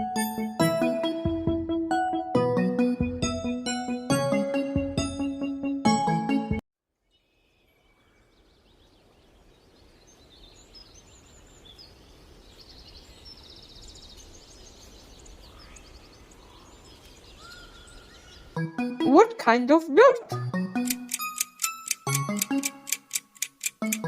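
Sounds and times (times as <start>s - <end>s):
small birds chirping and trilling: 7.0s - 18.6s.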